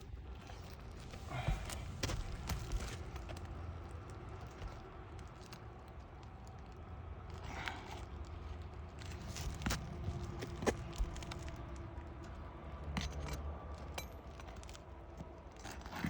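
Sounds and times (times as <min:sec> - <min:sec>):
steady low rumble: 0:00.2 - 0:12.7.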